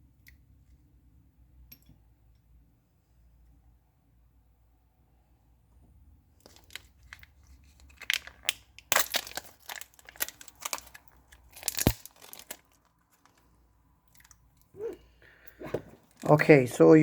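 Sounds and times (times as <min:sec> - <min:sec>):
crinkly paper being peeled: 0:06.4 - 0:13.5
sharp irregular crackles: 0:06.4 - 0:13.5.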